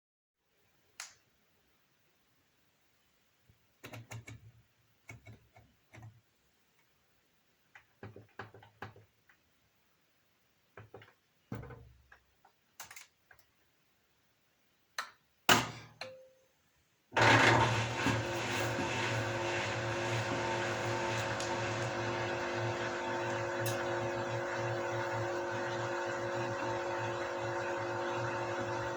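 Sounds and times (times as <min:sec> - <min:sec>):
washing machine humming: 0:17.2 - 0:28.9.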